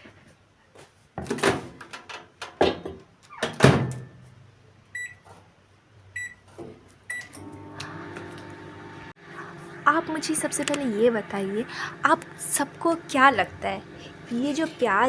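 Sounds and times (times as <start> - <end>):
microwave keypad beeps: 5.0 - 5.2, 6.2 - 6.4, 7.1 - 7.4
microwave humming: 7.1 - 15.0.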